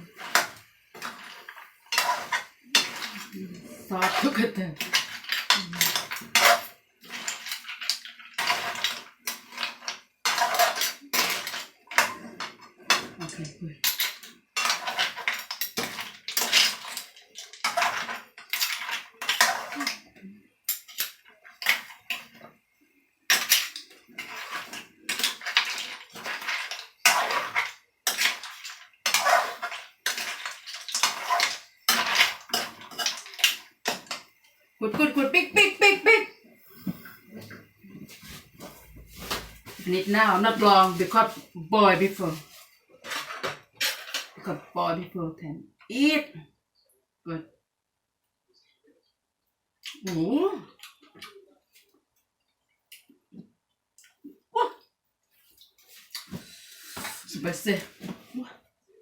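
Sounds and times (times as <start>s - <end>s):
utensil scraping a dish: 0.0s - 12.2s, 23.3s - 33.3s, 55.9s - 58.2s.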